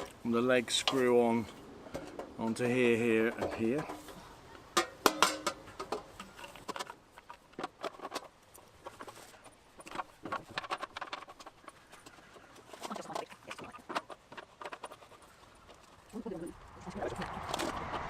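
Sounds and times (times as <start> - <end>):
metal legs clicking and knocking: 4.8 - 12.2.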